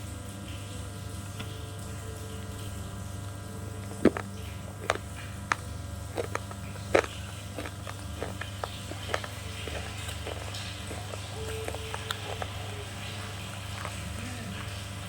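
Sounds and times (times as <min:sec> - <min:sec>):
slate crunching when chewed: 0:03.8 - 0:15.0.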